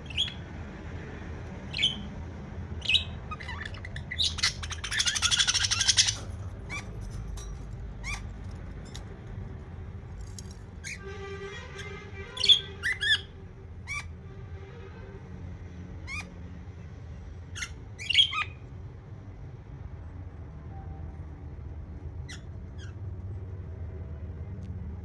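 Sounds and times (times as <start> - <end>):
budgerigars chirping and squawking: 0.0 - 0.5, 1.7 - 2.1, 2.8 - 7.2, 8.0 - 8.4, 12.2 - 14.1, 16.0 - 16.3, 17.4 - 18.7, 22.3 - 23.0.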